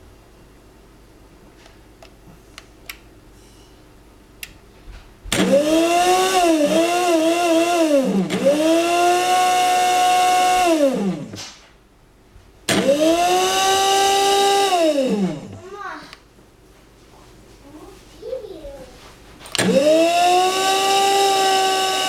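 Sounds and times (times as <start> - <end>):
coffee grinder motor whining: 5.4 - 11.4, 12.7 - 15.6, 19.5 - 22.0.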